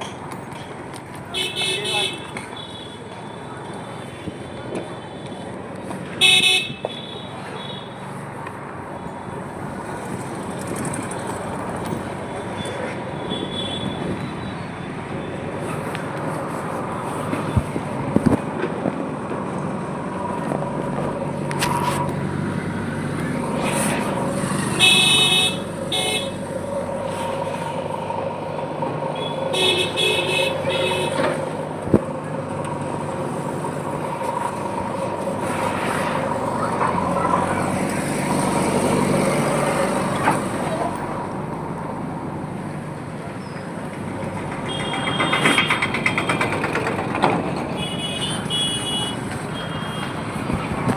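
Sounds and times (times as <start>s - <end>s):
vehicle engines running: 0.0s - 6.2s, 6.8s - 50.9s
car horns honking: 1.3s - 3.0s, 6.2s - 7.9s, 24.7s - 26.4s, 29.1s - 31.5s, 44.7s - 46.4s, 47.7s - 50.2s.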